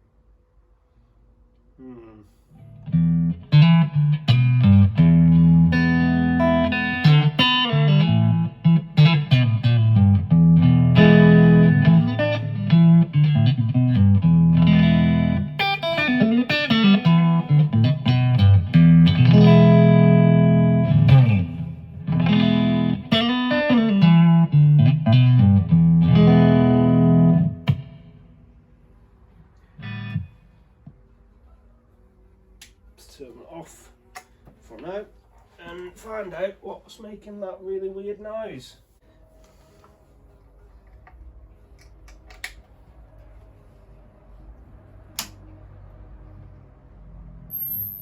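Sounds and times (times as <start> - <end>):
electric guitar playing: 2.6 - 28.3, 29.8 - 30.4.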